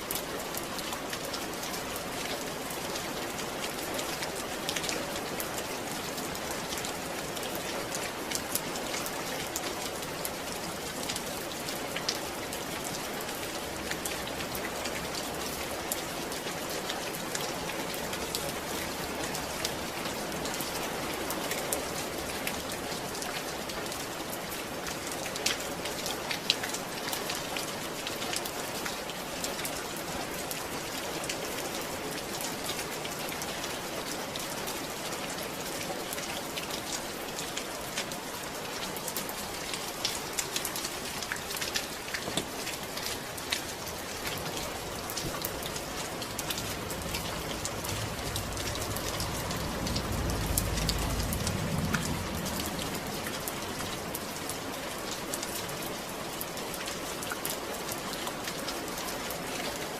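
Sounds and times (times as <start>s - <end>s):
rain falling: 0.0s - 59.9s
low rumble: 45.5s - 54.1s.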